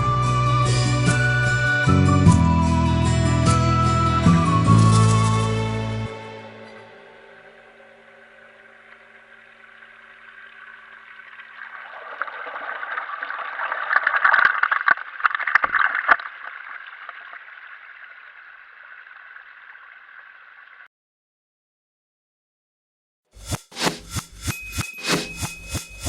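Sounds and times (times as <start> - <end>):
water gurgling: 6.9 - 20.9.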